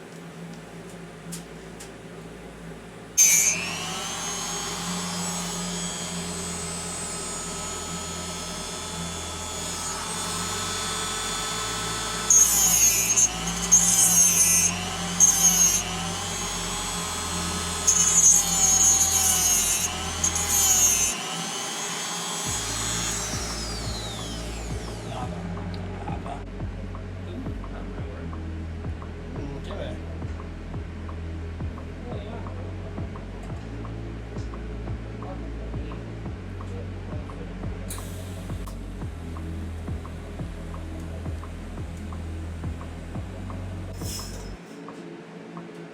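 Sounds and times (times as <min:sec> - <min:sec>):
welding arc buzz: 0:03.2 - 0:25.2, 0:43.9 - 0:44.6.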